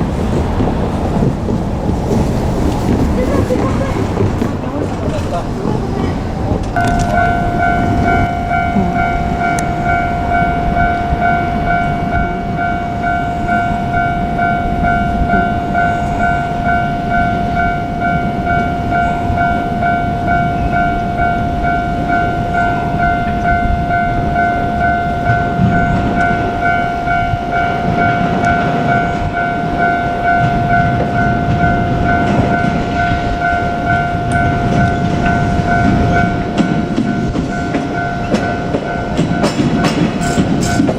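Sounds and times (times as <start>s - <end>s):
electric train rumbling on rails: 0.0s - 40.9s
level-crossing warning bell ringing: 3.8s - 40.9s.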